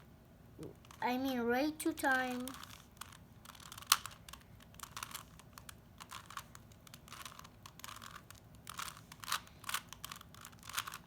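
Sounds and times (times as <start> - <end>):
plastic puzzle cube clicking: 2.4 - 11.0.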